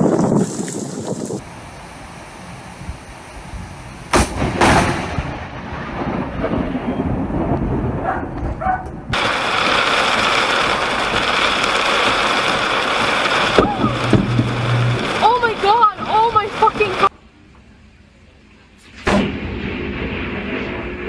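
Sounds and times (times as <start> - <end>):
thunder rumble: 0.0 - 17.1, 18.8 - 21.0
thunder crack: 4.1 - 17.1, 18.9 - 21.0
loud steady rushing noise: 9.1 - 17.1.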